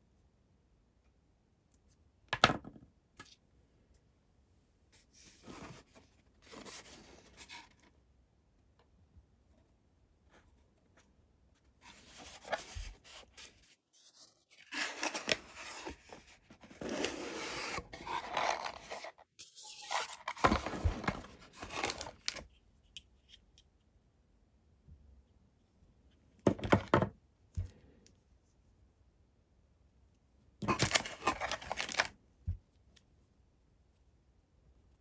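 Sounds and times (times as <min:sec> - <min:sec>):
packaging tearing and rustling: 0:14.6 - 0:22.4, 0:30.6 - 0:32.1.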